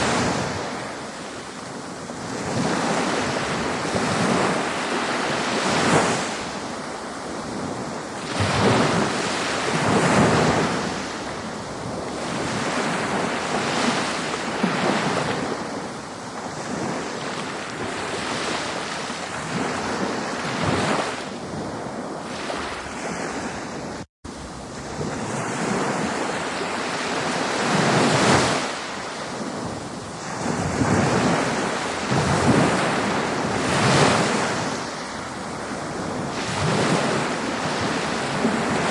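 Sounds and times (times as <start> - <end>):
ocean waves washing in: 0.0 - 38.9.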